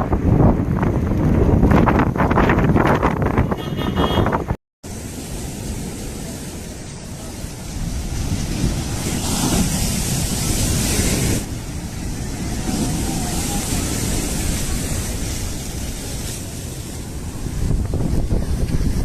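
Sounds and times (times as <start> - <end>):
wind buffeting microphone: 0.0 - 4.6, 7.2 - 19.0
heavy rain: 4.8 - 19.0.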